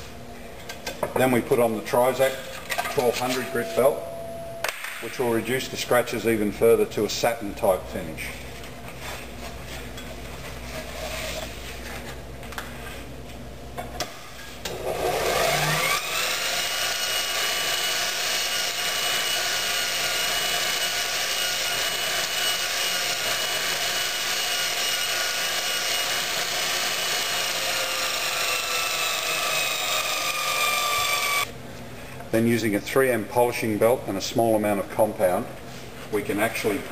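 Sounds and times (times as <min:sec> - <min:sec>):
low hum: 0:03.1 - 0:06.6
belt grinder motor whining: 0:14.8 - 0:31.5.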